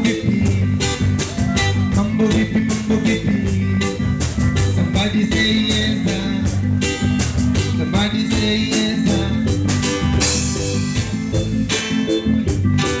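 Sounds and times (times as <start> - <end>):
person singing: 0.0 - 4.0, 7.6 - 9.6
live reggae band playing: 0.0 - 13.0.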